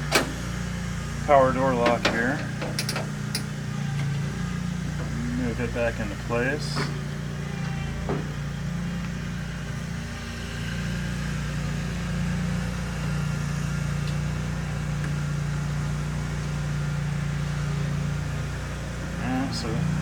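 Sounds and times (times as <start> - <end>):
low machine hum: 0.0 - 20.0.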